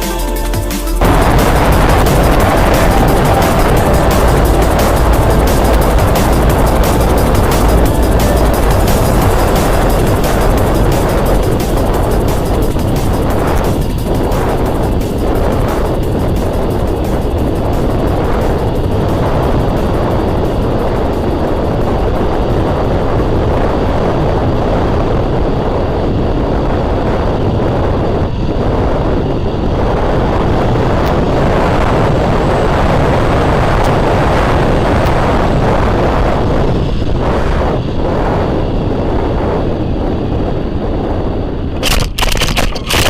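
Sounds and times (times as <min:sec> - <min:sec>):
drone propeller noise: 0:00.0 - 0:43.0
wind buffeting microphone: 0:01.0 - 0:43.0
sharp clicks and knocks: 0:41.8 - 0:43.0.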